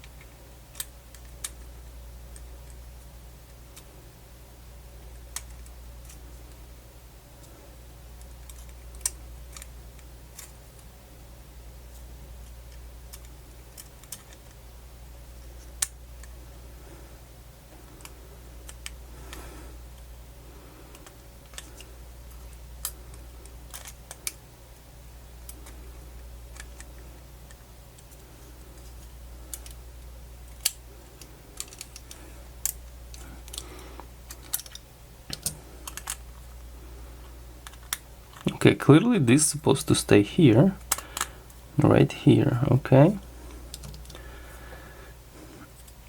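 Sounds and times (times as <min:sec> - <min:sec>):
light clicks of small plastic parts: 0:00.0 - 0:01.7, 0:05.1 - 0:06.6, 0:08.2 - 0:10.9, 0:11.9 - 0:14.6, 0:17.8 - 0:20.1, 0:20.9 - 0:24.4, 0:25.4 - 0:25.8, 0:26.5 - 0:29.8, 0:30.5 - 0:36.5, 0:40.8 - 0:41.3, 0:43.7 - 0:44.2
steady low hum: 0:00.0 - 0:46.0.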